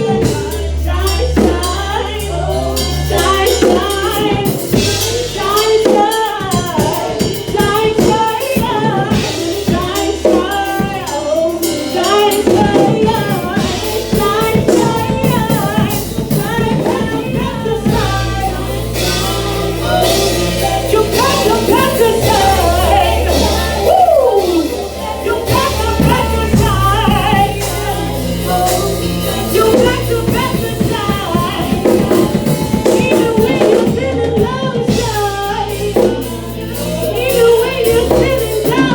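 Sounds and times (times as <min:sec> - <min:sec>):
bass line: 0:00.0 - 0:38.9
drums: 0:00.0 - 0:38.9
person singing: 0:00.0 - 0:38.9.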